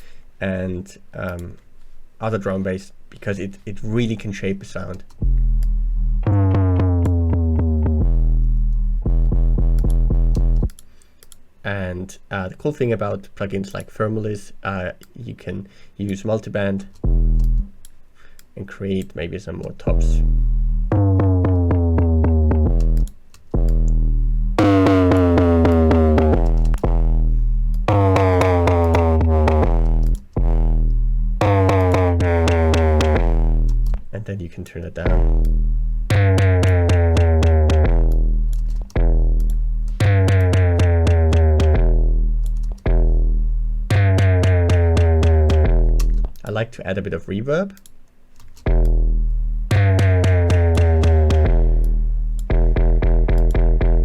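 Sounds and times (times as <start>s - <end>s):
rapid rhythmic clicks: 4.8s - 11.5s, 16.0s - 20.2s, 20.9s - 43.3s, 43.9s - 46.6s, 47.7s - 54.0s
distorted sub-bass notes: 5.2s - 10.8s, 17.0s - 17.7s, 19.9s - 34.2s, 35.0s - 46.6s, 48.6s - 54.0s.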